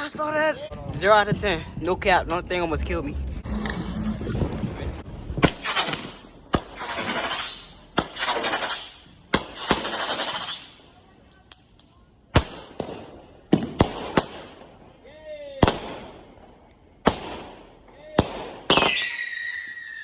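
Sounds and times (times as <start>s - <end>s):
fireworks bangs: 3.4s - 10.8s, 12.4s - 14.9s, 15.6s - 20.0s
fireworks hissing crackle: 3.4s - 11.0s.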